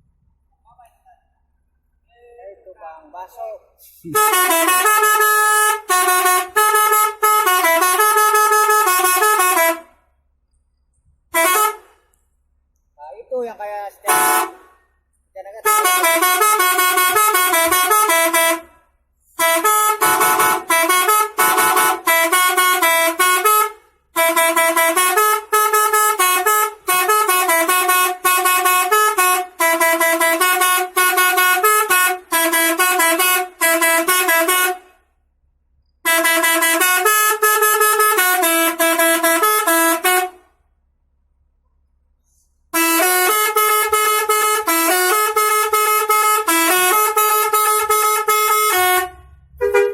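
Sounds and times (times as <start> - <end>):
bus multi-tone horn melodies: 4.1 - 10.2, 11.3 - 12.1, 14.0 - 14.8, 15.6 - 35.1, 36.0 - 40.6, 42.7 - 49.9.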